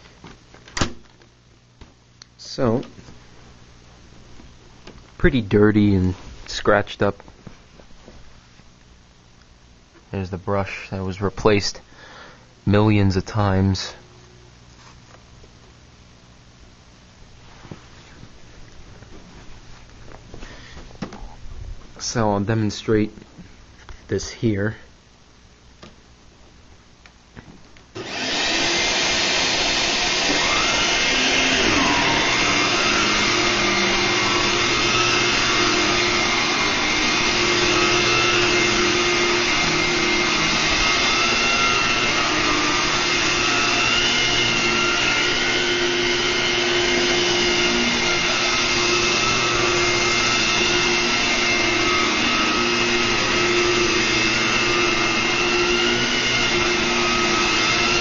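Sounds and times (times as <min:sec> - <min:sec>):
vacuum cleaner motor whine: 0:28.0 - 0:58.0.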